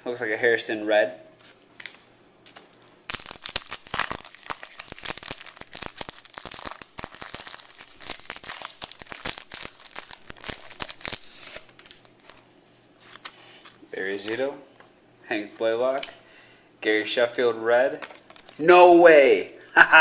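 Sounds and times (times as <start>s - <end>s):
wrapper tearing and crinkling: 2.5s - 12.5s, 18.2s - 18.6s.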